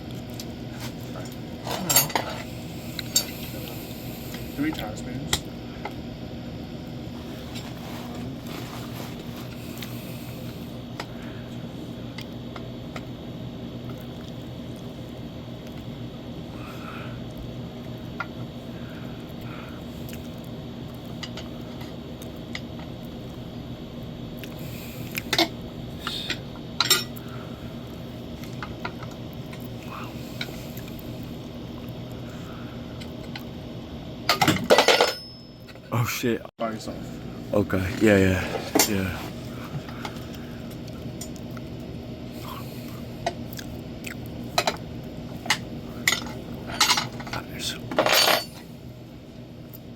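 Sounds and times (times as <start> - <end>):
metal tools clinking on wheel: 34.6 - 35.7, 46.1 - 48.7.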